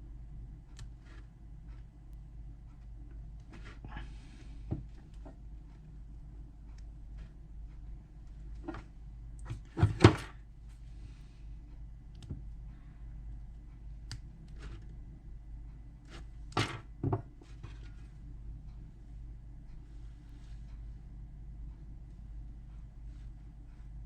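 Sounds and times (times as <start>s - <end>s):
light clicks and taps: 11.7s - 12.9s.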